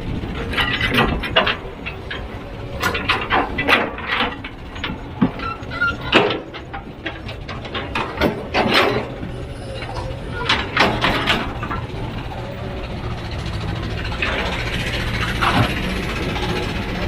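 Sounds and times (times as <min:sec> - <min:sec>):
heavy machine engine rumble: 0:00.0 - 0:17.0
short metallic squeals: 0:04.8 - 0:06.6, 0:08.8 - 0:11.2.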